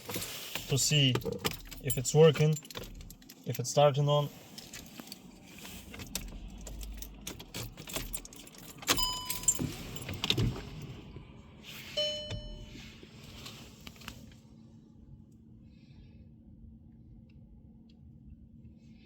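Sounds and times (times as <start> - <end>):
car key jangling in ignition: 0.0 - 11.2, 11.9 - 12.9
short electronic beeps: 12.0 - 12.8.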